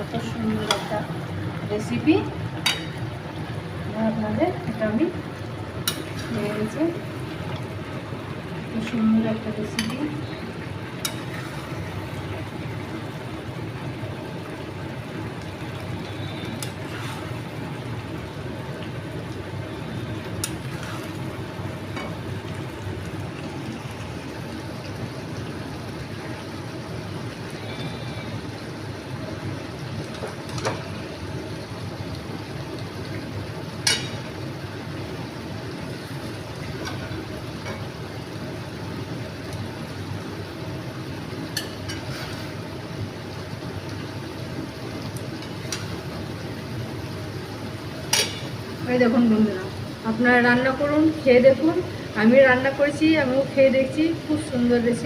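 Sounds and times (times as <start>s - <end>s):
metal utensil clinking on pan: 33.8s - 34.2s, 48.1s - 48.5s.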